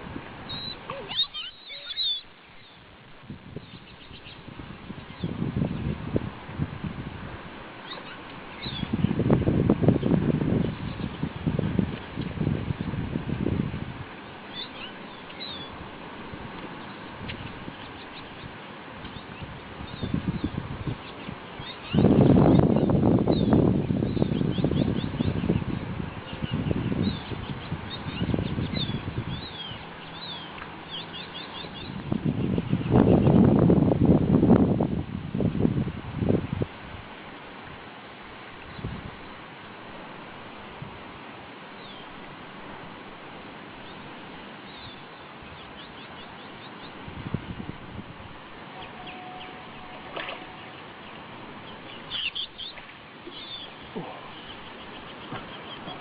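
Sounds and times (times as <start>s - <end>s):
steady background hiss: 0.0s - 56.0s
small birds chirping: 0.5s - 2.9s, 3.6s - 5.9s, 7.8s - 9.2s, 14.5s - 15.8s, 16.6s - 33.4s, 44.7s - 47.0s, 48.8s - 56.0s.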